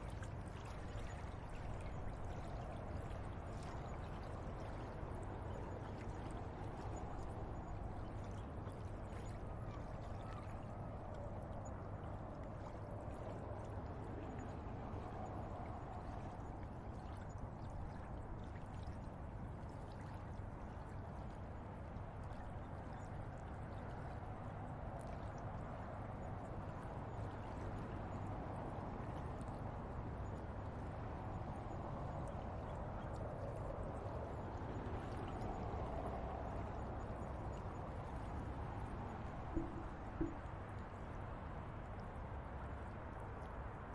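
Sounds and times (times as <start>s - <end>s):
constant low hum: 0.0s - 43.9s
river water rushing: 39.4s - 40.6s.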